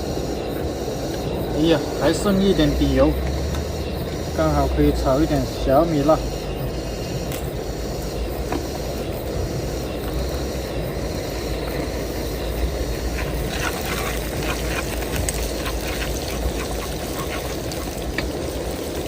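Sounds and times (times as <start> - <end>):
chilies sizzling in oil: 12.7 - 19.0
crackles and clicks: 12.8 - 19.0.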